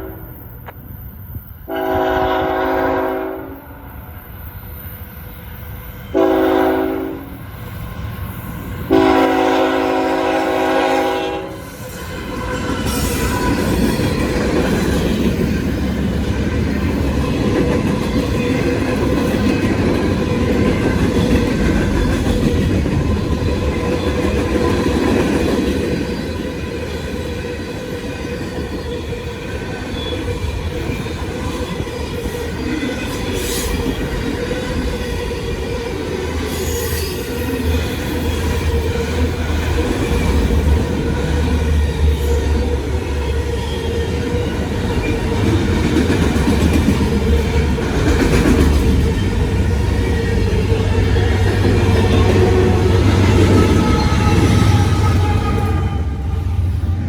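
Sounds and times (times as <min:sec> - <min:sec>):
locomotive horn blasts: 0:01.7 - 0:03.8, 0:06.1 - 0:07.4, 0:08.9 - 0:11.7, 0:53.6 - 0:56.5
train wheels clattering on rail: 0:11.8 - 0:57.0.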